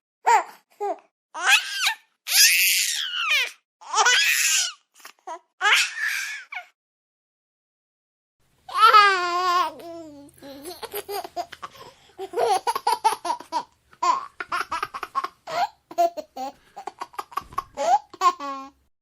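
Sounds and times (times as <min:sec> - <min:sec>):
baby laughing: 0:08.7 - 0:18.8.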